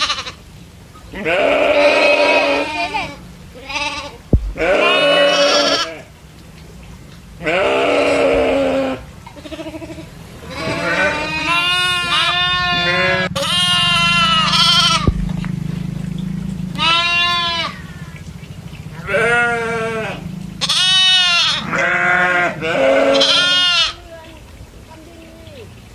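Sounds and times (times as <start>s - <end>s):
goats bleating: 0.0s - 0.4s, 1.1s - 6.2s, 7.4s - 15.2s, 16.7s - 18.2s, 18.9s - 24.0s
steady low hum: 0.4s - 22.7s.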